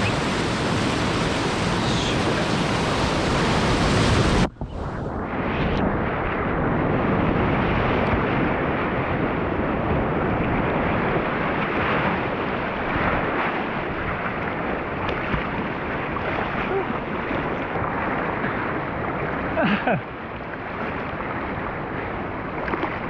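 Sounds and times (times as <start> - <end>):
river water rushing through rapids: 0.0 - 4.5.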